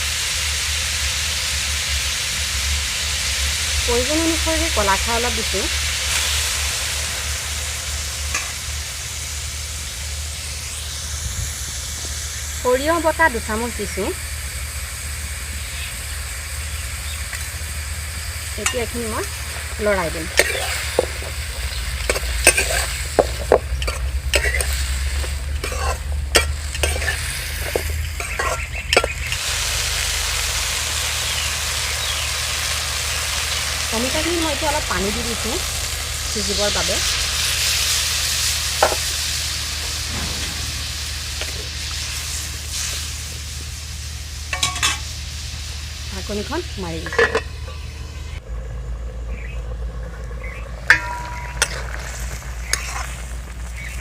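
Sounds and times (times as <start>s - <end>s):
papaya sizzling in hot oil: 0.0s - 48.7s, 49.3s - 54.0s
spatula scraping a pan: 20.4s - 21.4s, 22.1s - 23.2s, 23.8s - 29.4s, 50.9s - 53.4s.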